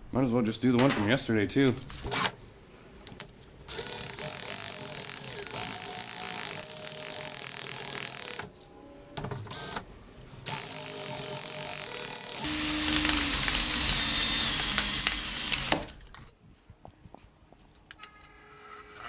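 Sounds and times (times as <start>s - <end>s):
power tool sanding metal: 2.1s - 12.5s.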